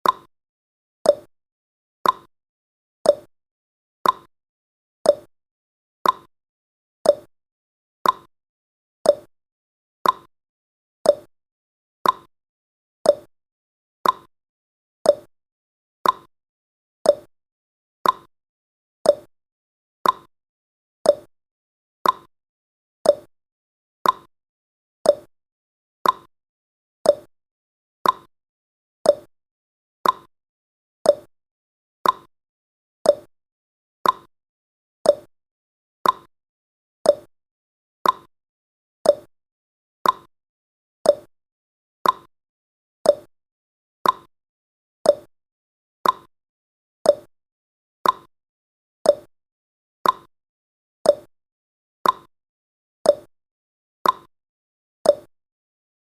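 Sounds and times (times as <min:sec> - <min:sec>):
clock ticking: 0:30.0 - 0:30.3, 0:34.0 - 0:34.3, 0:36.0 - 0:36.3, 0:40.0 - 0:40.3, 0:42.0 - 0:42.3, 0:44.0 - 0:44.3, 0:46.0 - 0:46.3.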